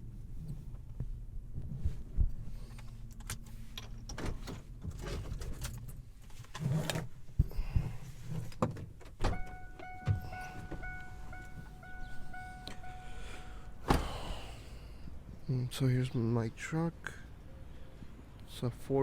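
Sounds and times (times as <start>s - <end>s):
low engine rumble: 9.1s - 18.7s
car warning chime beeping: 9.2s - 15.4s
clicks and knocks of car door: 13.8s - 14.3s.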